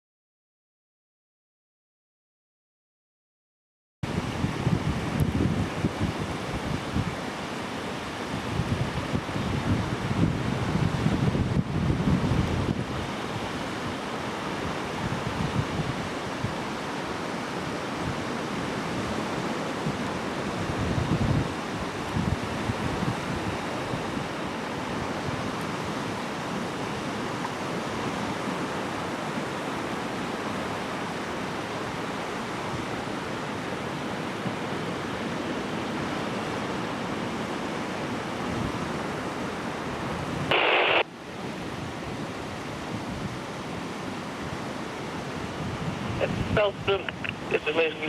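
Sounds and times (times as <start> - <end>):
wind on microphone: 4.0 - 7.3, 8.0 - 29.1, 38.0 - 48.0
radio squelch hiss burst: 40.5 - 41.1, 46.2 - 48.0.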